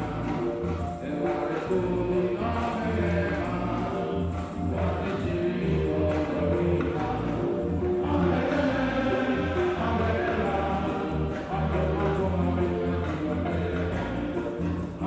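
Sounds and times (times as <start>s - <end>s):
church choir singing a hymn: 0.0s - 15.0s
low musical accompaniment: 0.0s - 15.0s.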